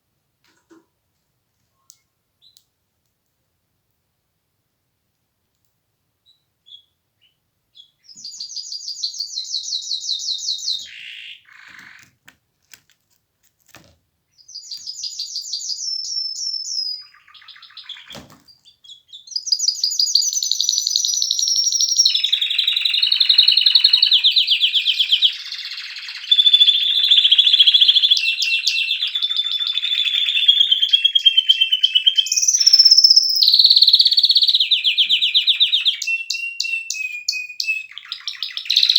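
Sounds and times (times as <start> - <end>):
canary singing trills: 6.2 - 12.1, 14.3 - 38.9.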